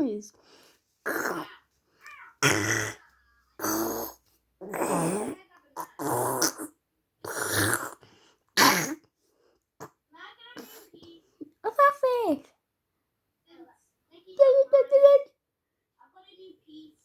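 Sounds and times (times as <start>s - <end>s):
person making throaty vocal noises: 1.0s - 1.5s, 2.4s - 8.0s.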